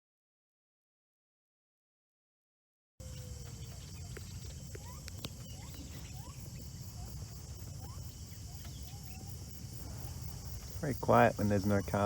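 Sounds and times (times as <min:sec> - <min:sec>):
bird chirping: 0:03.0 - 0:12.0
high insect drone: 0:03.0 - 0:12.0.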